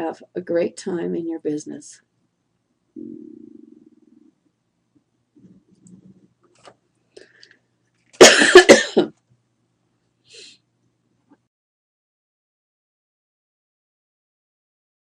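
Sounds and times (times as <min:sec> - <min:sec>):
faint breath: 0:07.1 - 0:07.7
person coughing: 0:08.2 - 0:09.2.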